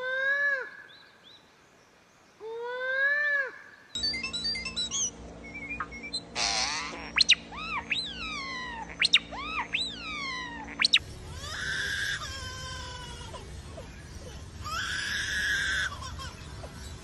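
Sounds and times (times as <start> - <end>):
wailing bird call: 2.6 - 17.0
bird whistling calls: 4.0 - 11.0.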